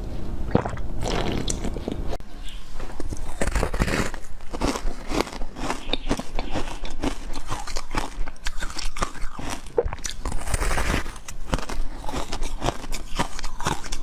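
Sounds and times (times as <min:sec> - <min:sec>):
crunchy bites and chewing: 0:03.0 - 0:14.0.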